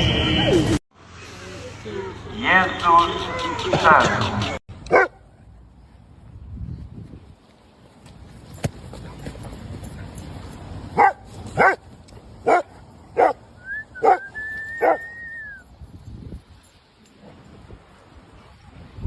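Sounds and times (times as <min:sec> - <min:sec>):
dog barking: 0:04.9 - 0:05.2, 0:11.0 - 0:11.8, 0:12.4 - 0:13.4, 0:14.0 - 0:15.0.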